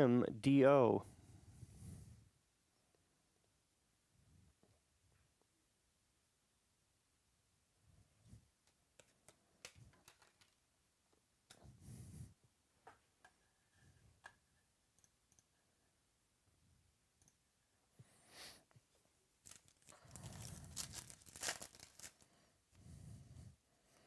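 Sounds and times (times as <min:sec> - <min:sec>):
cards clicking: 0:08.7 - 0:10.6
foil wrapper tearing and crinkling: 0:19.4 - 0:22.2.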